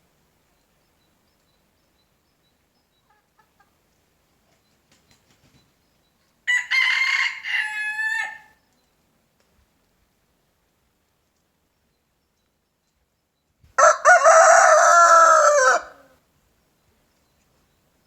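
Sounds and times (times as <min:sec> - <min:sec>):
rooster crowing: 0:06.5 - 0:08.5, 0:13.8 - 0:16.1.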